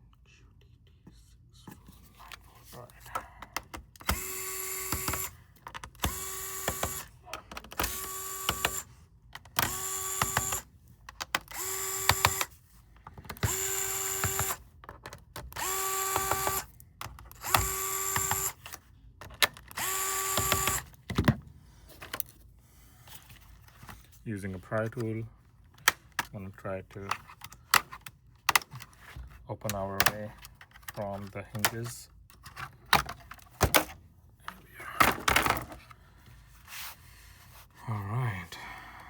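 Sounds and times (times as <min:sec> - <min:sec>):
electric screwdriver whirring: 0:04.0 - 0:08.9, 0:09.5 - 0:10.7, 0:11.4 - 0:12.5, 0:13.3 - 0:14.6, 0:15.5 - 0:16.7, 0:17.3 - 0:18.8, 0:19.7 - 0:21.0.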